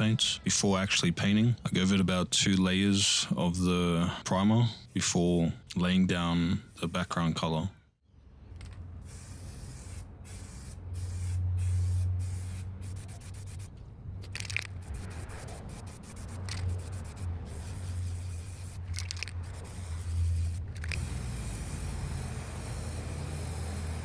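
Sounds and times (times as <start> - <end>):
spray paint can hissing: 8.6 - 24.0.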